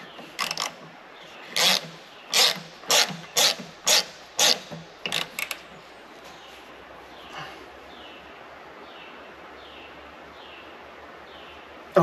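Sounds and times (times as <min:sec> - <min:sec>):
ratchet wrench clicking: 0:00.4 - 0:00.8, 0:01.6 - 0:05.6.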